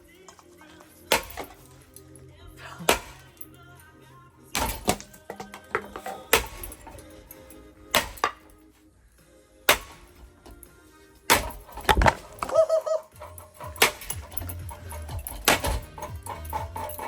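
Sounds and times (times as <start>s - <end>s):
ceiling fan being smashed: 0.2s - 1.9s, 2.8s - 3.6s, 4.5s - 8.6s, 9.7s - 17.0s.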